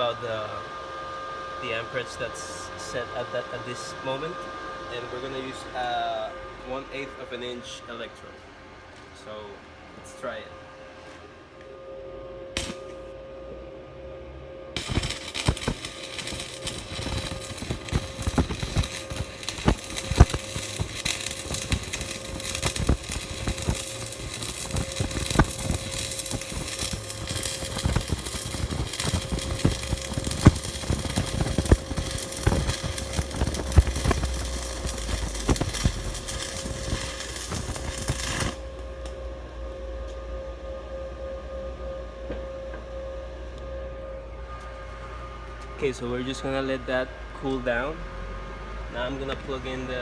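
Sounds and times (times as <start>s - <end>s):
welding arc crackling: 12.6s - 13.0s, 14.8s - 39.3s.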